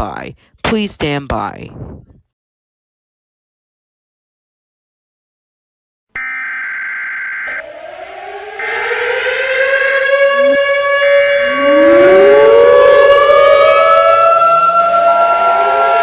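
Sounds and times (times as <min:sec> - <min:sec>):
sirens winding up: 0:06.2 - 0:16.0
steady siren tone: 0:06.2 - 0:16.0.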